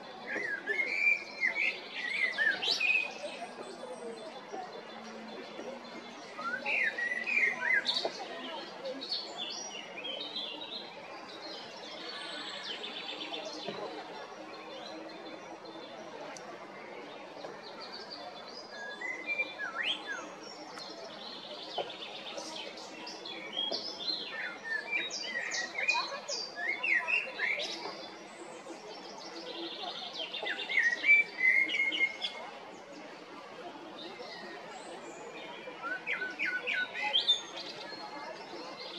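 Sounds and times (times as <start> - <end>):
blackbird singing: 0.3 - 3.3, 6.4 - 8.2, 17.9 - 20.3, 21.2 - 28.0, 29.6 - 32.4, 35.1 - 37.9.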